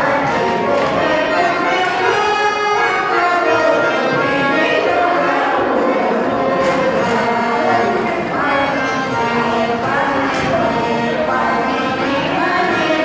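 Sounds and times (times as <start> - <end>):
button accordion playing: 0.0 - 13.0
group of people singing: 0.0 - 13.0.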